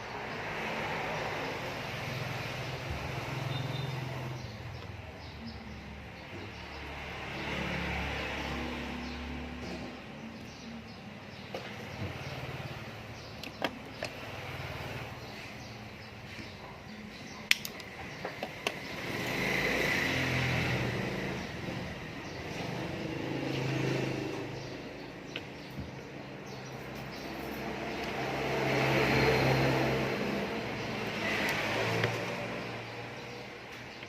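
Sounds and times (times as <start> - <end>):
motor vehicle passing: 0.0 - 34.0
sharp clicks: 17.4 - 19.0.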